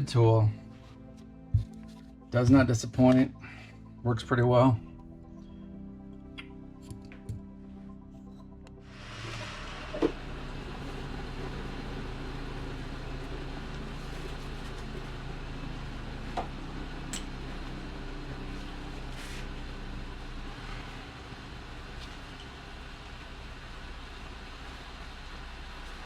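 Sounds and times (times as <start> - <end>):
low mechanical hum: 6.9 - 26.0.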